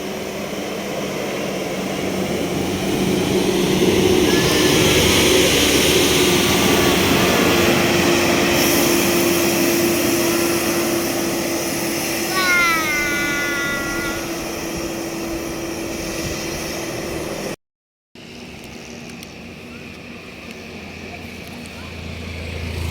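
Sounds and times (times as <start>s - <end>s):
bus passing by: 0.0s - 17.6s, 18.2s - 22.9s.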